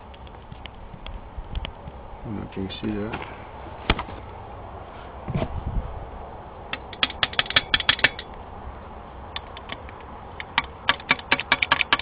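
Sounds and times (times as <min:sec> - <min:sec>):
sharp metal clicks: 0:06.7 - 0:08.4, 0:09.3 - 0:12.0.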